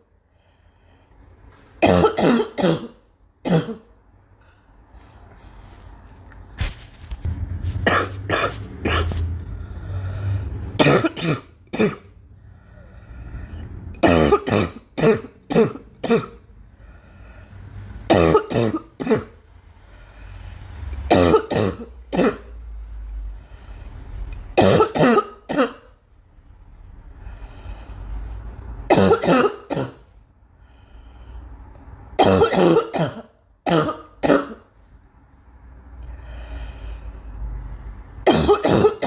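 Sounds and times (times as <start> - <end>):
girl coughing: 1.8 - 3.9, 7.8 - 9.2, 10.8 - 12.2, 14.0 - 16.4, 18.1 - 19.4, 21.1 - 22.6, 24.6 - 26.0, 28.9 - 30.1, 32.2 - 34.7, 38.2 - 39.0.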